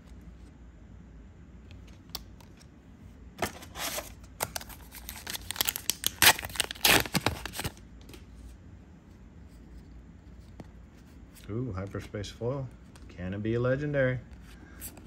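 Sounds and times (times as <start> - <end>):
foil wrapper tearing and crinkling: 3.4 - 7.8.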